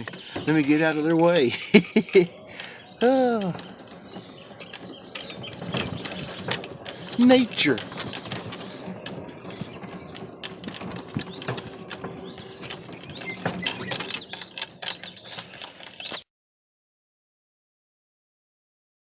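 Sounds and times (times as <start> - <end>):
songbirds chirping: 0.0 - 16.2
rustles: 1.4 - 16.2.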